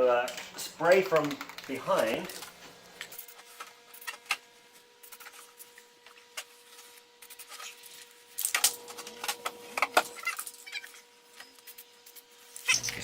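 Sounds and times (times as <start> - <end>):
objects clicking and knocking: 0.3 - 3.3.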